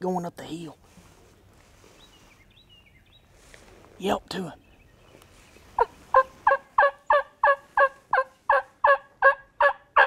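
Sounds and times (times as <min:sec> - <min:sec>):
turkey call hen yelps: 0:05.8 - 0:10.0.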